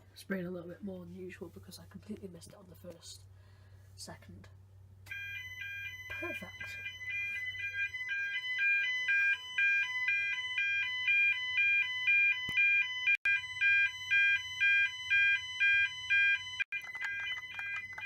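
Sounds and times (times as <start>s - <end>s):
fire alarm two-tone sounder: 5.1s - 18.0s.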